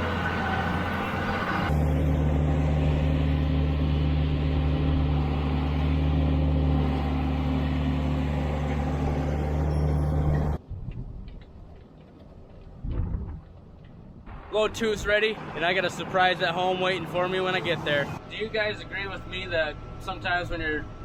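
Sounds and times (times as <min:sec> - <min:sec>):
tractor engine droning: 0:00.0 - 0:10.6, 0:14.3 - 0:21.0.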